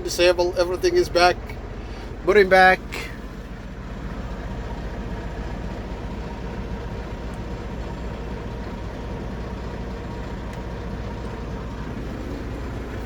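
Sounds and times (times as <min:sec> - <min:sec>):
truck engine idling: 0:00.0 - 0:13.0.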